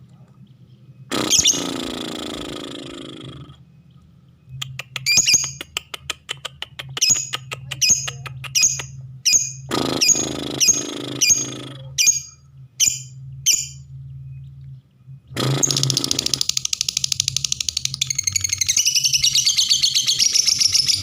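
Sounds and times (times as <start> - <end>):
low steady hum: 0.0 - 21.0
lovebird harsh shrill chirps: 1.1 - 1.9, 5.0 - 5.6, 7.9 - 13.8.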